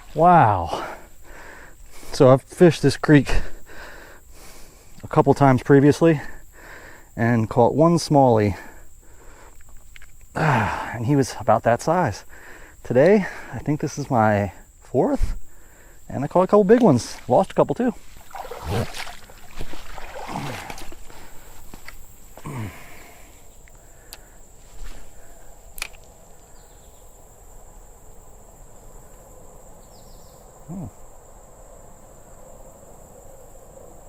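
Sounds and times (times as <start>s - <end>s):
crickets chirring: 0.0s - 34.0s
sharp clicks: 25.7s - 26.1s.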